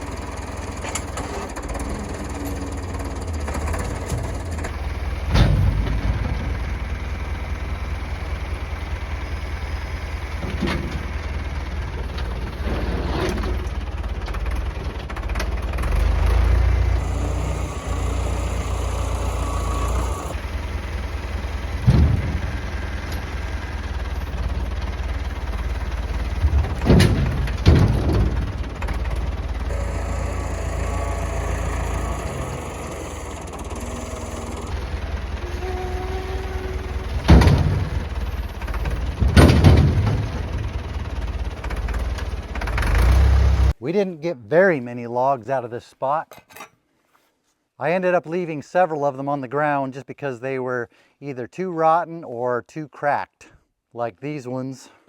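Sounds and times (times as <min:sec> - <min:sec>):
tractor engine running: 0:00.0 - 0:43.8
loud clunks and knocks: 0:00.1 - 0:06.9, 0:10.4 - 0:11.4, 0:21.7 - 0:24.8, 0:25.8 - 0:35.2, 0:36.8 - 0:43.3.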